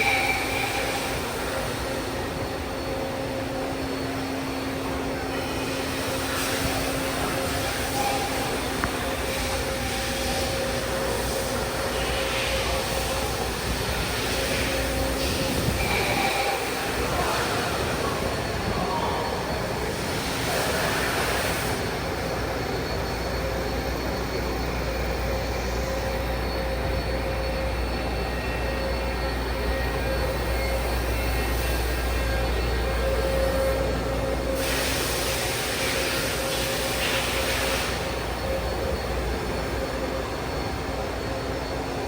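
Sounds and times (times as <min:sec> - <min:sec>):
faint steady tones: 0:00.0 - 0:42.0
machine hum: 0:00.0 - 0:42.0
hiss: 0:20.0 - 0:22.0, 0:34.5 - 0:38.2.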